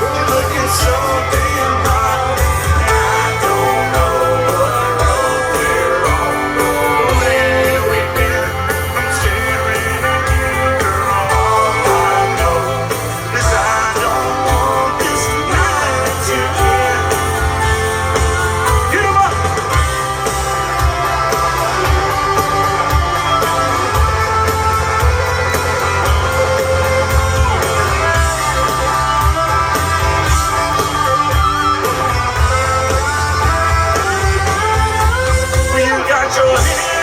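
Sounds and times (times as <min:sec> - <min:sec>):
electric guitars: 0:00.0 - 0:37.0.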